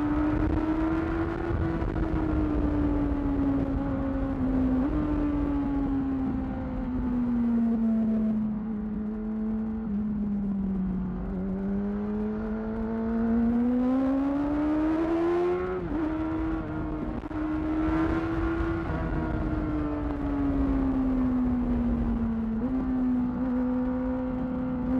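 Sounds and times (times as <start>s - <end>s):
motorcycle engine accelerating: 0.0s - 24.9s.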